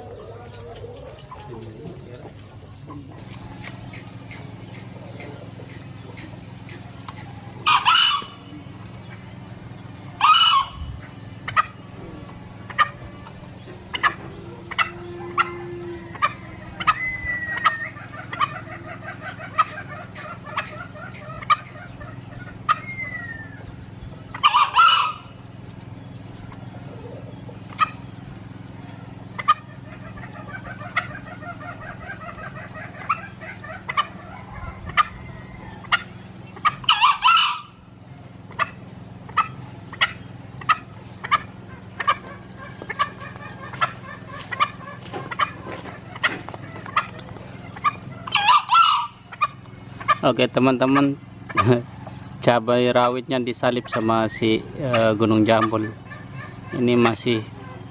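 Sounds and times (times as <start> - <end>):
faint bird chatter: 0.0 - 57.9
steady low hum: 0.0 - 57.9
rooster crowing: 7.3 - 25.6, 26.3 - 38.8, 39.4 - 50.2.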